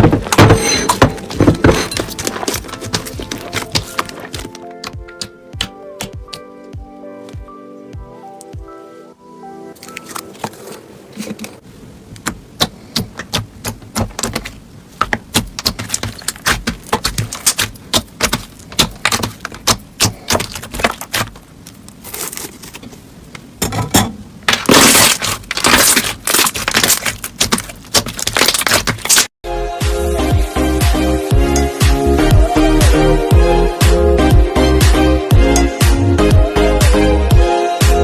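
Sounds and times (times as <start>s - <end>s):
crunchy slime crackling: 2.1s - 5.3s, 12.6s - 23.0s, 24.5s - 29.3s.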